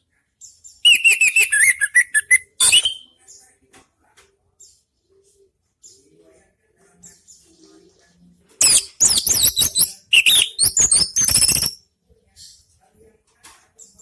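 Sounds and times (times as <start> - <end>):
faint soft bird calls: 0.8 - 3.1.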